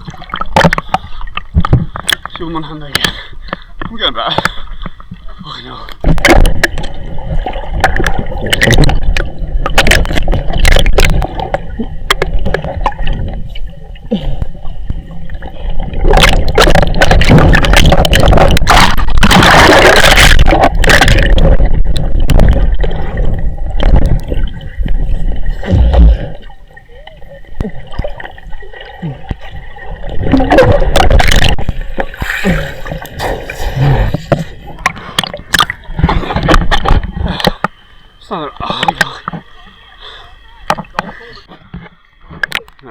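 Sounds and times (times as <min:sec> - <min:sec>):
river water splashing and gurgling: 0:15.1 - 0:37.6.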